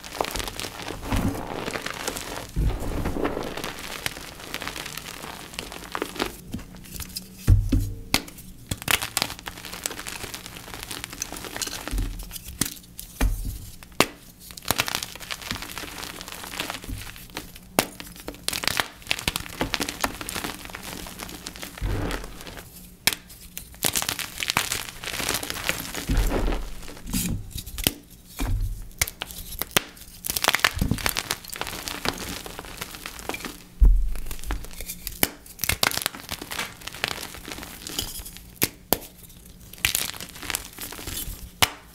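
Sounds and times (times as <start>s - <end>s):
chalk blocks crunching: 0.0s - 7.2s, 14.7s - 39.1s
dull deep thumps: 2.5s - 3.8s, 33.8s - 34.6s.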